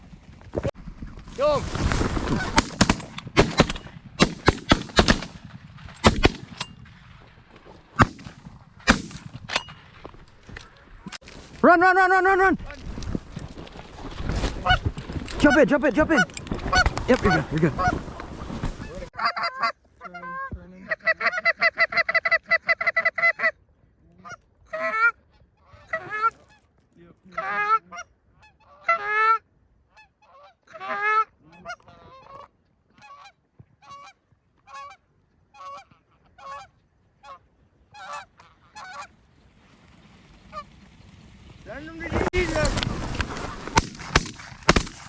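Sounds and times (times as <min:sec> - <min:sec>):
geese honking and clucking: 0:14.5 - 0:26.7, 0:27.3 - 0:39.2, 0:40.4 - 0:40.8.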